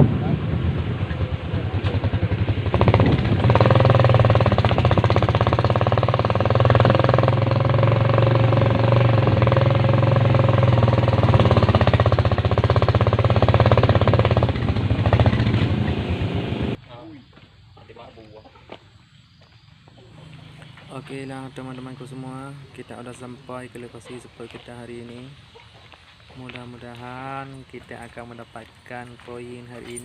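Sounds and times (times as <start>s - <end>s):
small engine running: 1.0s - 16.8s.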